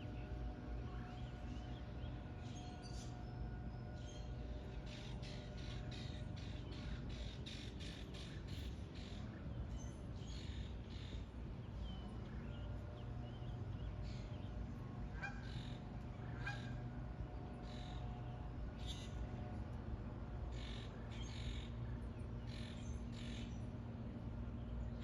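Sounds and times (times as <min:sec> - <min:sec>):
geese honking: 0:15.0 - 0:17.0.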